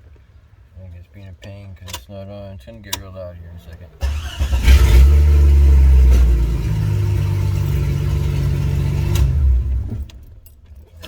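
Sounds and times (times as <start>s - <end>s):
car engine starting and idling: 3.7s - 11.0s.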